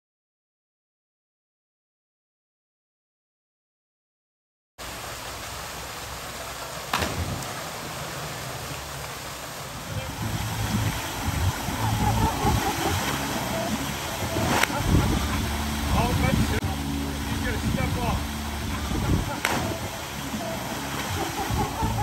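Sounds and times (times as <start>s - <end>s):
waterfall rushing: 4.8s - 22.0s
wind on microphone: 9.7s - 22.0s.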